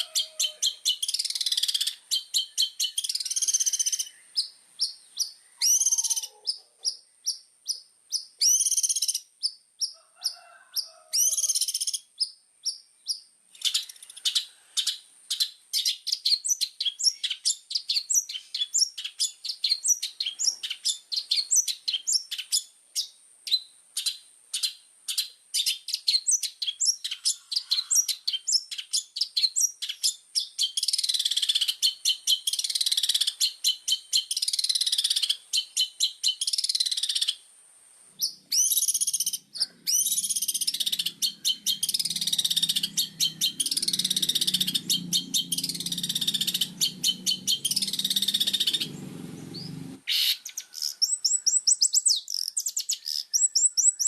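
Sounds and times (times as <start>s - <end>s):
bird singing harsh chatter: 0.0s - 37.4s, 38.2s - 54.0s
low hum: 40.5s - 50.0s.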